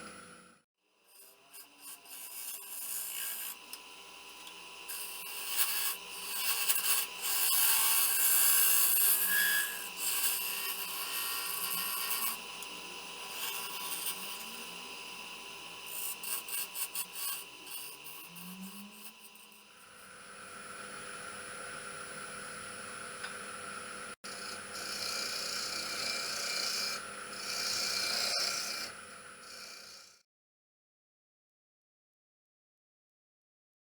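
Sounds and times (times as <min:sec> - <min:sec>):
tool scraping spinning wood: 0:01.1 - 0:20.0, 0:24.2 - 0:30.2
wood lathe motor whine: 0:01.1 - 0:30.2.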